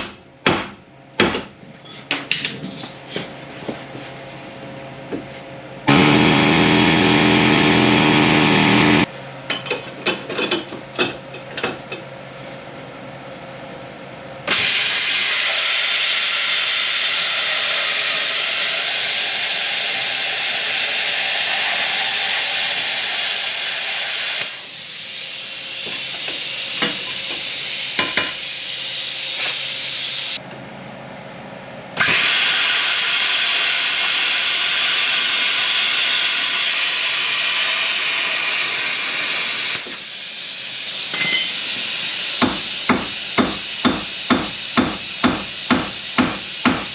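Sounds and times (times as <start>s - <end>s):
plasma cutter hissing: 14.5s - 30.4s, 32.1s - 46.9s.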